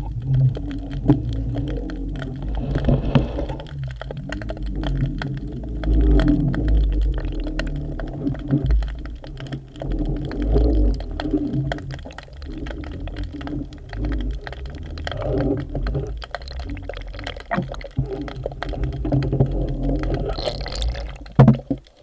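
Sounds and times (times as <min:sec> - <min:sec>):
muffled underwater water rumble: 0:00.0 - 0:22.0
small clicks and crackles: 0:00.0 - 0:22.0.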